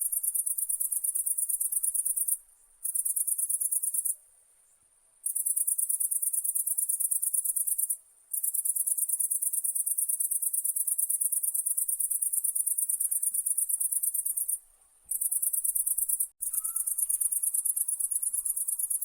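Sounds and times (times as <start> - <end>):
insect trilling: 5.2 - 19.0.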